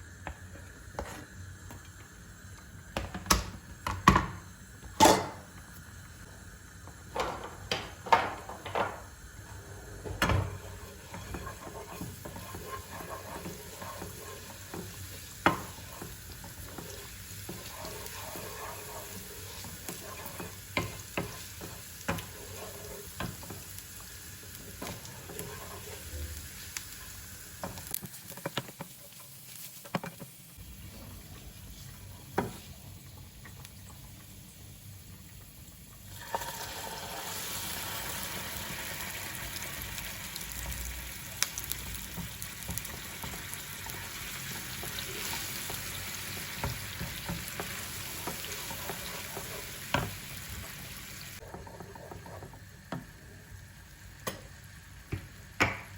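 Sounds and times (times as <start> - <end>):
food sizzling in pan: 0.0 - 55.9.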